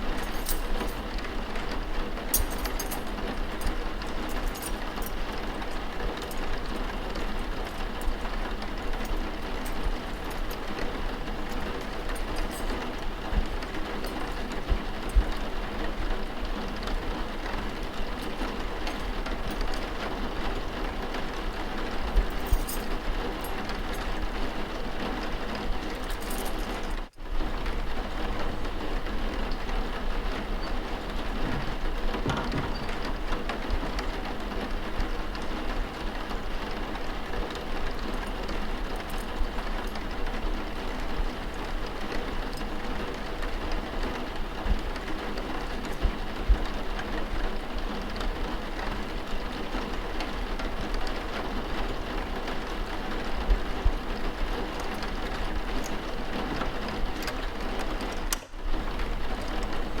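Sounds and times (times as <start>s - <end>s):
steady rain falling: 0.0s - 60.0s
faint ticks and knocks: 30.6s - 34.1s.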